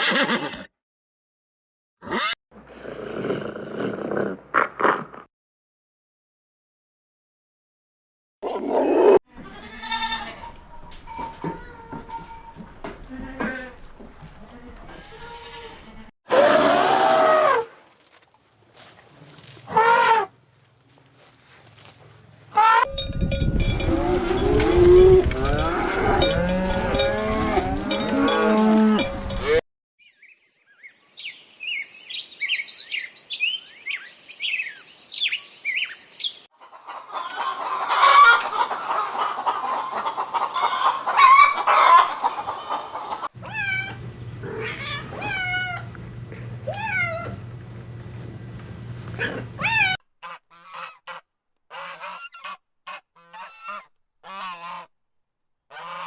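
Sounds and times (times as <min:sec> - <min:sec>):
farm fowl calling: 0:19.7 - 0:20.3, 0:36.6 - 0:54.9.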